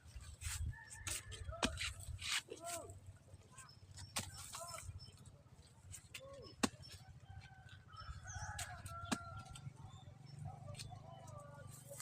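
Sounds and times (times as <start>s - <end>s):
birds chirping: 2.9s - 12.0s.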